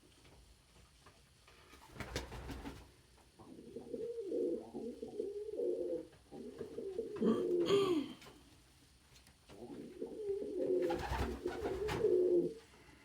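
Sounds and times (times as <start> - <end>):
rustle: 0.0 - 7.5
pigeon cooing: 3.4 - 8.1, 9.6 - 12.6.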